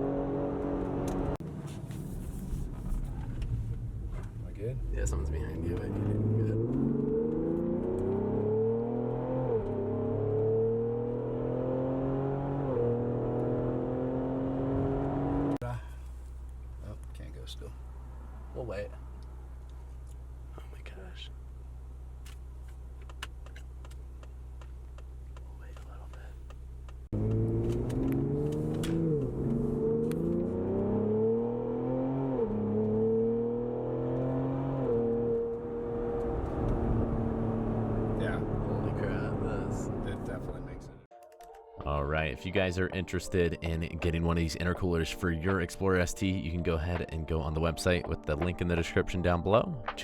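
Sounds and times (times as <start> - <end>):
car engine accelerating: 0.0 - 1.6, 4.7 - 15.6, 26.7 - 41.1.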